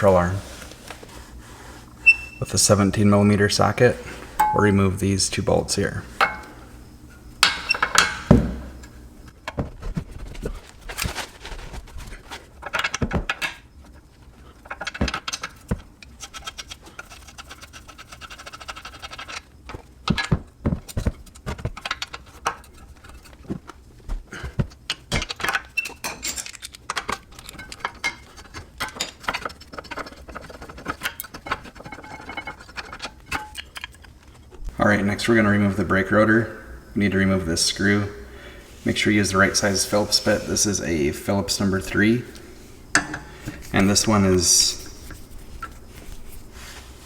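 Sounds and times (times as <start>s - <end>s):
bolts being handled: 3.6s - 9.0s, 24.6s - 34.1s, 37.7s - 47.0s
socket wrench loosening bolts: 7.4s - 8.4s.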